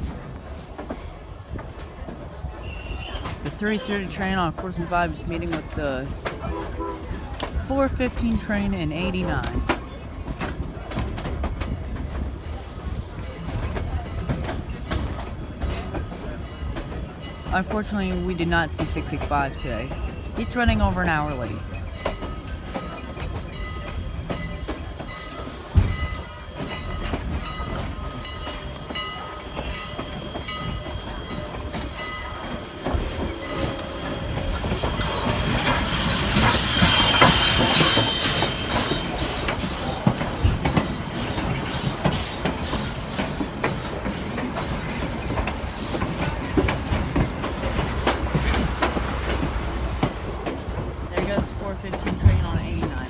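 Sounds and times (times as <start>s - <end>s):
train wheels clicking over rail joints: 0.0s - 53.0s
high wheel squeal: 2.6s - 7.4s, 25.4s - 46.6s.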